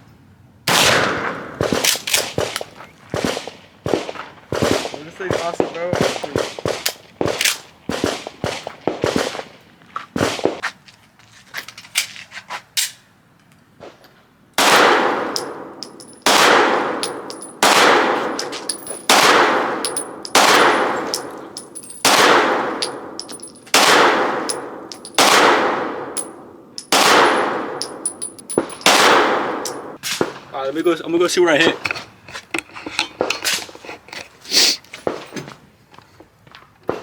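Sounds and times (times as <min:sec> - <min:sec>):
loud echoing gunshots: 0:00.7 - 0:02.6, 0:03.2 - 0:09.5, 0:14.6 - 0:30.0.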